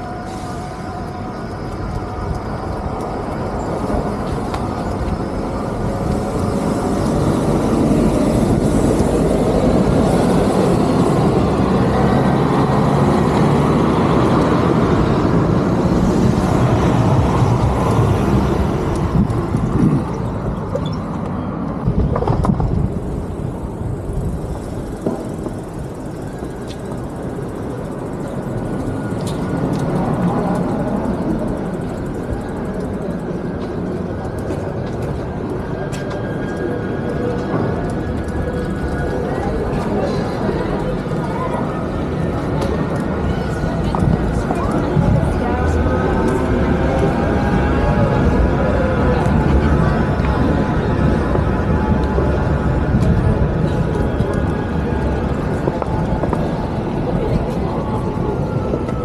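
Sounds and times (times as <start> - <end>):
vehicle running close by: 5.6 - 20.4.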